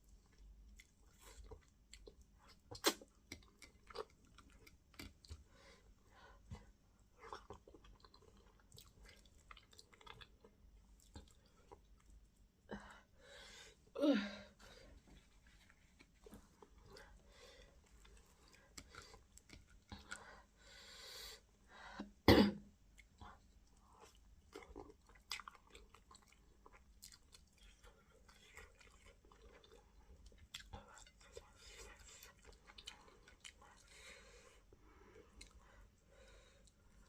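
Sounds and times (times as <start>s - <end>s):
chewing and lip smacks: 0.1s - 5.5s, 6.5s - 12.2s, 23.0s - 34.0s.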